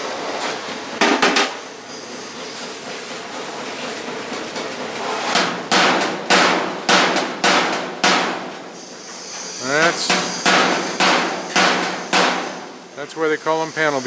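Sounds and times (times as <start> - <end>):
low workshop noise: 0.0 - 14.0
hammer striking sheet metal: 5.2 - 8.8, 9.6 - 13.0.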